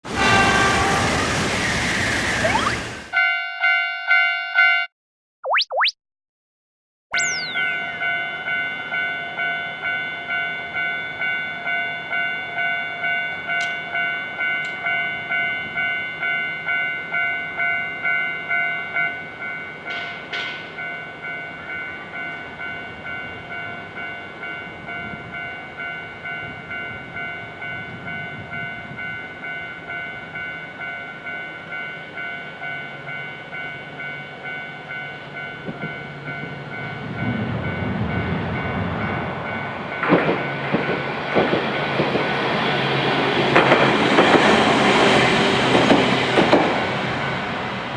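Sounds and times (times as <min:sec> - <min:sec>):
low rumble of train: 0:00.1 - 0:03.1, 0:07.8 - 0:47.9
railroad crossing bell ringing: 0:03.1 - 0:04.9, 0:07.6 - 0:41.5.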